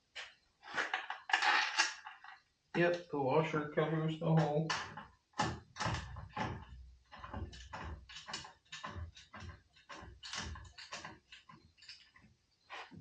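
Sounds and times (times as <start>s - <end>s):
small metal clicks and knocks: 0.9s - 2.5s, 4.4s - 13.0s.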